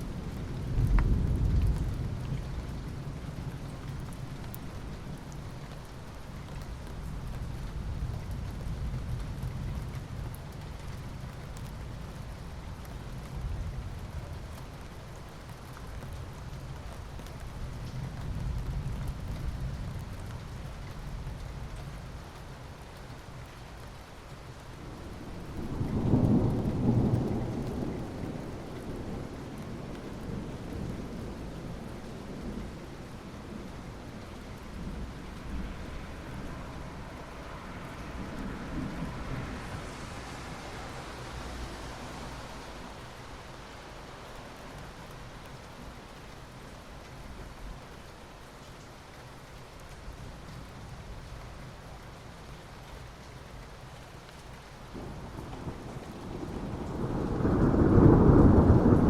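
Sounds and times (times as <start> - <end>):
steady rain: 0.0 - 59.0
low rumbling thunder: 0.1 - 3.8, 24.9 - 33.8, 37.9 - 39.9, 55.0 - 59.0.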